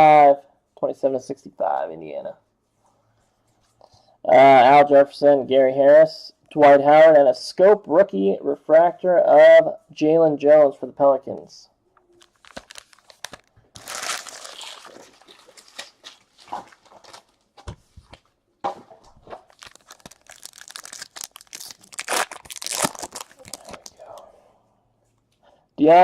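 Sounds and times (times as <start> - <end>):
wrappers tearing and crinkling: 12.1 - 17.4, 19.4 - 24.0.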